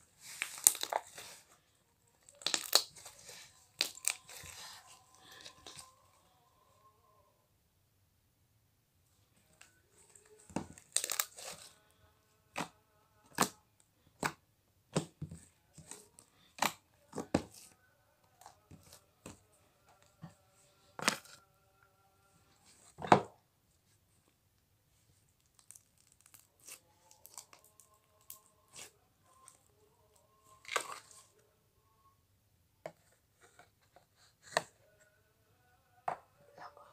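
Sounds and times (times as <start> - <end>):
slime popping and crackling: 0.3 - 1.3, 2.3 - 4.7, 10.7 - 11.7, 25.4 - 28.9.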